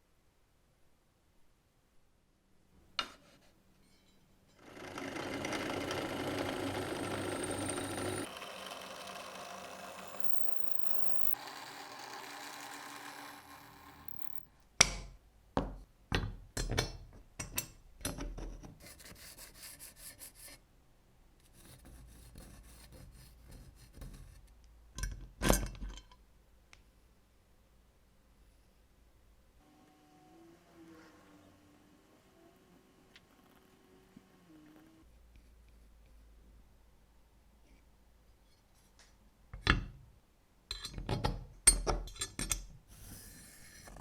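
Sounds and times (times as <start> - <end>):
scraping on a tool: 42.9 - 44.0.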